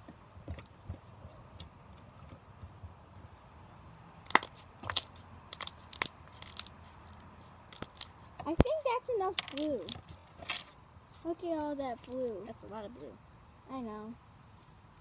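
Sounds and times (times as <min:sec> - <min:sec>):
slime being stretched: 0:04.3 - 0:06.7
sticky slime clicks and pops: 0:04.3 - 0:06.7.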